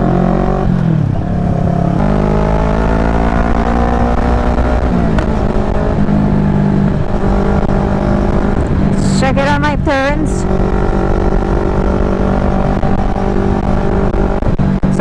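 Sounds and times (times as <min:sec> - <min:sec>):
motorcycle engine running hard: 0:00.0 - 0:15.0
wind and road noise: 0:00.0 - 0:15.0.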